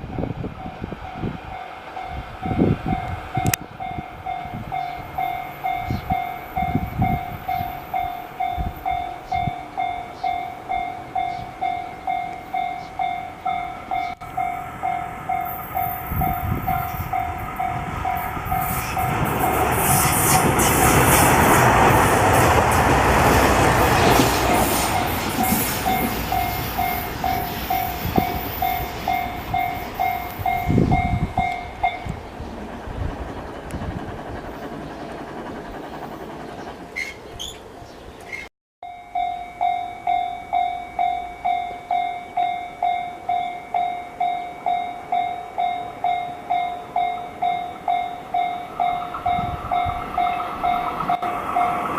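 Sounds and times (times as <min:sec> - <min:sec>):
level-crossing warning bell: 0:00.0 - 0:32.4, 0:38.8 - 0:51.9
train wheels clacking over rail joints: 0:18.1 - 0:30.5.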